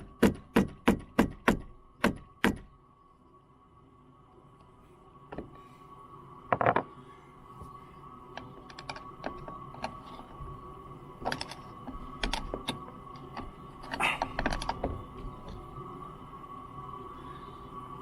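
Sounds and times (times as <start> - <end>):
faint high hum: 0.0 - 18.0
small tools and metal parts clicking: 8.3 - 10.4, 11.2 - 15.8.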